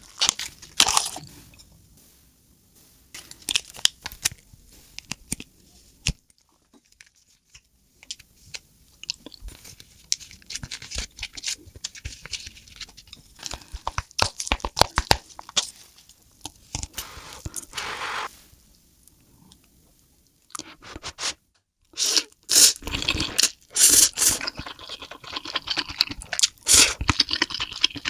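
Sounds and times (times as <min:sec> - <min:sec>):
chewing and crunching: 0:22.2 - 0:28.0.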